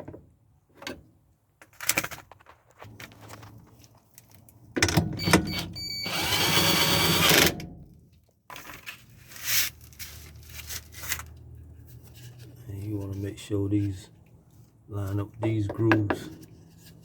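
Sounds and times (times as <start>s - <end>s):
power drill running: 5.2s - 7.5s.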